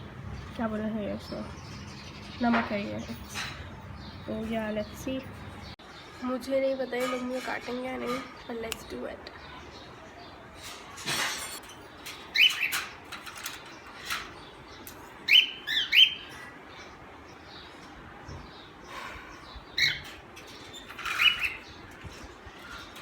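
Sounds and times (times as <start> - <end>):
cage clicks and rattles: 10.6 - 15.2, 20.0 - 23.0.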